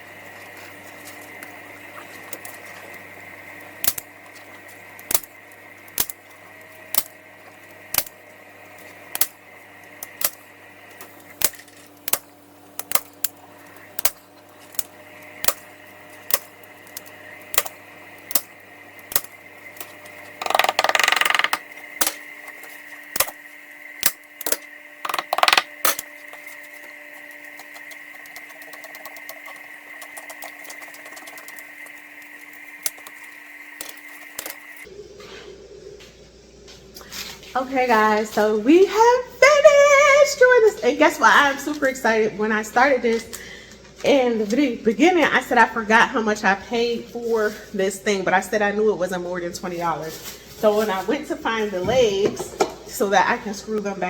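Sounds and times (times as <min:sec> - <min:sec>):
rustling scrape: 0:49.8 - 0:51.3.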